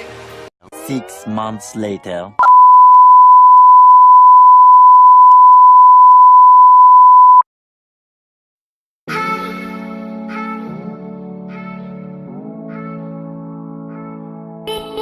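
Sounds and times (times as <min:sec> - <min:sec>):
high electronic beep: 0:02.4 - 0:07.4
music: 0:09.1 - 0:15.0.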